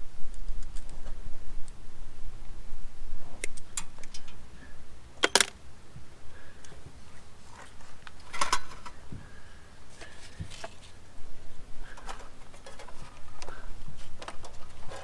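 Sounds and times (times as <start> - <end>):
low steady hum: 0.0 - 15.0
sharp clicks and knocks: 5.2 - 5.6.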